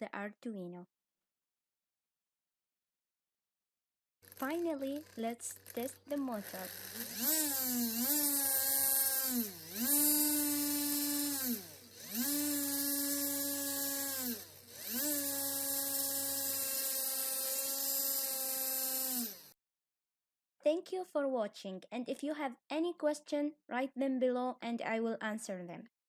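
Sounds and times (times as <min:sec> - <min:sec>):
electric motor whining: 0:04.3 - 0:19.6.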